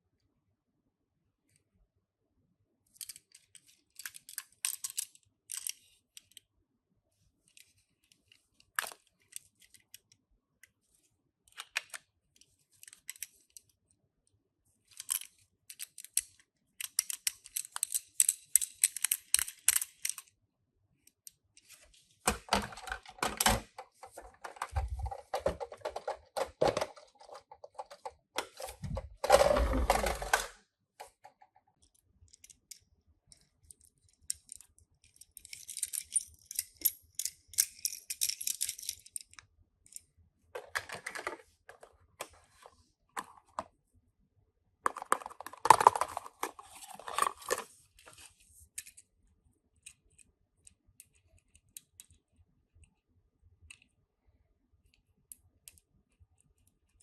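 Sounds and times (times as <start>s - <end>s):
toy cars clicking and tapping: 3.0s - 6.4s, 14.9s - 20.3s
packaging rustling and scraping: 21.7s - 30.6s, 44.9s - 48.6s.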